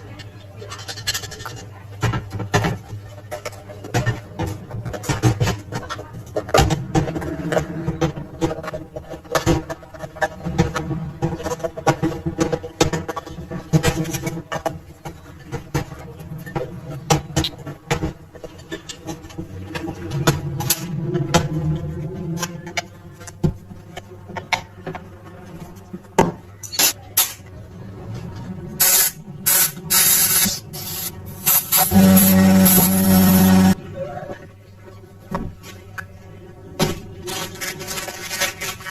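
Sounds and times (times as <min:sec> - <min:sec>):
steady low hum: 0:13.8 - 0:38.7
hissing spray: 0:28.8 - 0:33.8.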